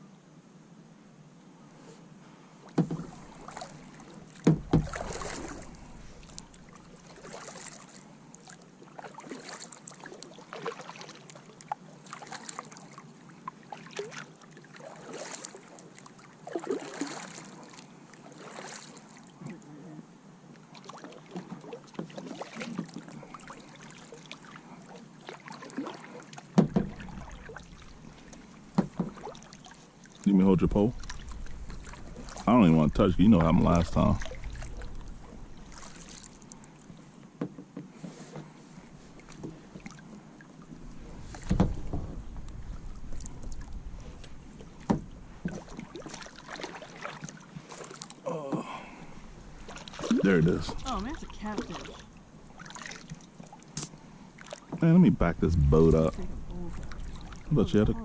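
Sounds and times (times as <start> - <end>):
paddle splashing in water: 2.6 - 19.6, 20.6 - 58.0
hard knocks: 4.4 - 5.0.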